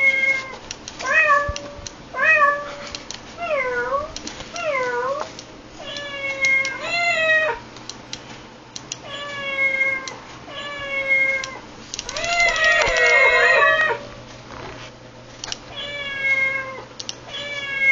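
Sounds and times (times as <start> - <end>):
recorded cat meow: 12.1 - 14.0, 15.7 - 17.9
short clicks: 17.0 - 17.2.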